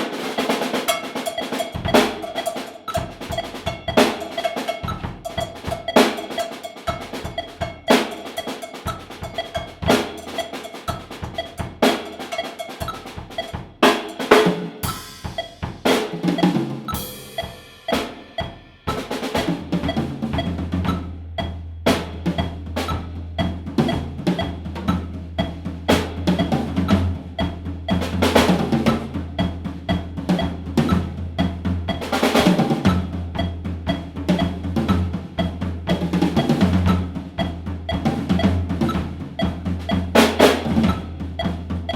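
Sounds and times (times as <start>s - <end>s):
cymbals ringing: 0.0s - 20.5s
drum kit solo: 0.0s - 41.9s
fast bass drum pattern: 0.0s - 41.9s.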